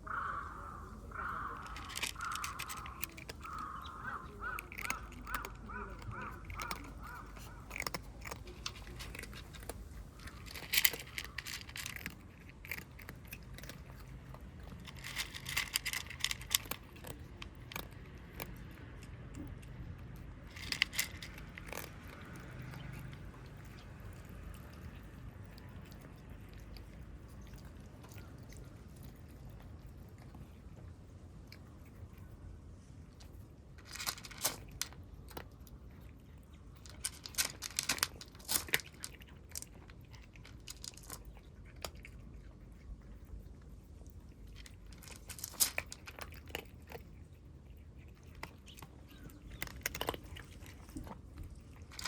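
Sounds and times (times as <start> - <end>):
crow cawing: 0.0 - 7.7.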